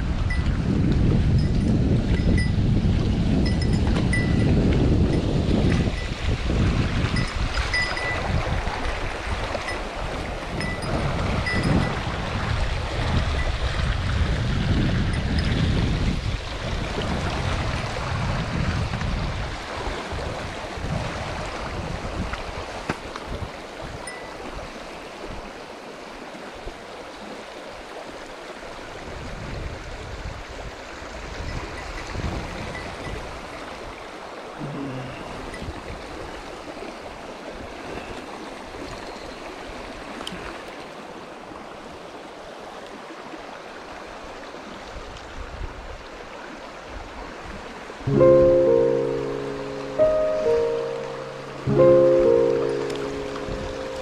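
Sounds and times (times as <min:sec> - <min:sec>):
wind rumble on microphone: 0:00.0 - 0:25.6, 0:28.6 - 0:40.6, 0:44.7 - 0:48.7, 0:52.9 - 0:54.0
stream rushing over rocks: 0:01.3 - 0:54.0.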